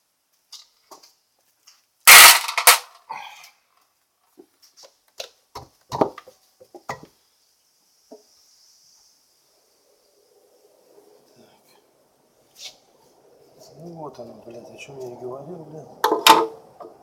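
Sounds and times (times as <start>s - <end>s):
tools and parts knocking and clicking: 5.5s - 7.1s, 16.0s - 17.0s.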